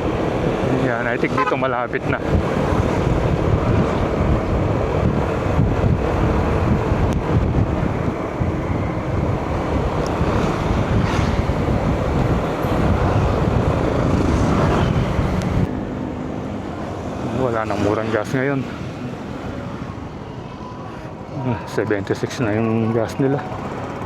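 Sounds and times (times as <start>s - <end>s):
road noise: 0.0s - 24.0s
wind buffeting microphone: 1.9s - 15.9s.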